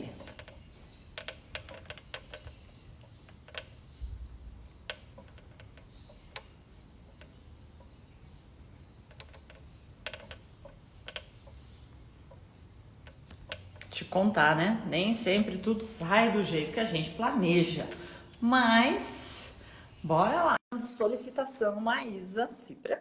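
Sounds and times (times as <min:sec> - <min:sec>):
typing on a keyboard: 0:00.0 - 0:08.0, 0:09.0 - 0:14.0.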